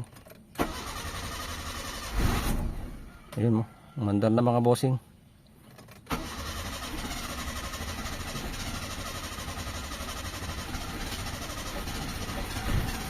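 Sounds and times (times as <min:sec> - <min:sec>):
car engine idling: 0:06.1 - 0:13.0.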